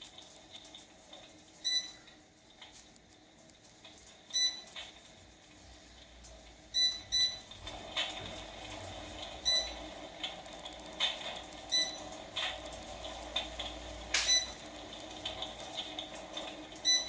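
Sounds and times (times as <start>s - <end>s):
light crackling: 0.0s - 6.6s, 7.5s - 16.9s.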